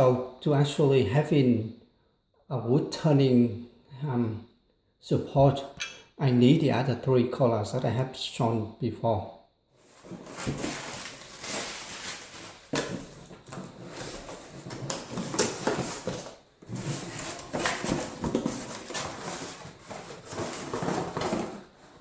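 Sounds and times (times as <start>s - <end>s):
packaging rustling: 9.8s - 22.0s.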